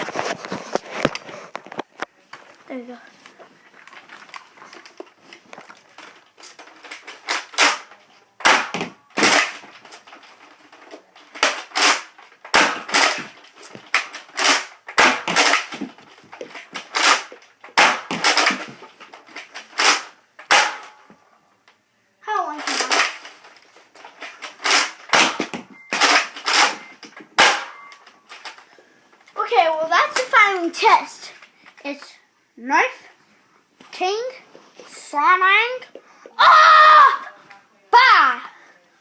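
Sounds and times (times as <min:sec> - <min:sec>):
toy blaster pumping and firing: 0:06.8 - 0:09.7, 0:11.4 - 0:15.9, 0:16.6 - 0:18.8, 0:19.6 - 0:20.7, 0:22.6 - 0:23.3, 0:24.4 - 0:26.8.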